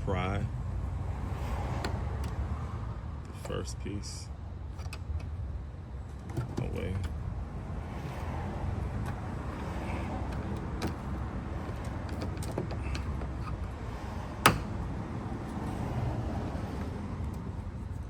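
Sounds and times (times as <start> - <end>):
sharp plastic snap: 14.4 - 14.8.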